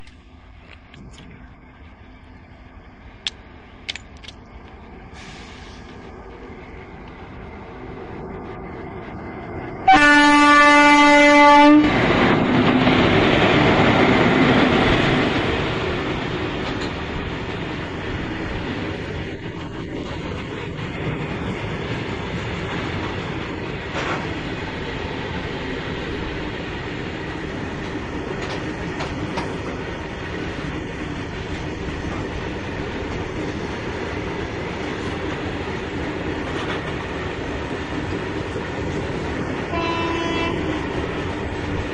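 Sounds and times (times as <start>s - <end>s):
freight train rumbling past: 0.0s - 41.9s
locomotive horn blast: 9.9s - 12.0s, 39.7s - 40.8s.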